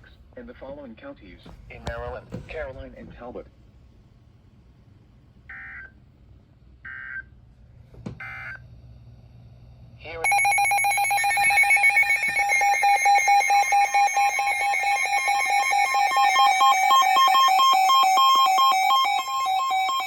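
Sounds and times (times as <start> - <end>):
warbling electronic alert tone: 10.2 - 20.0.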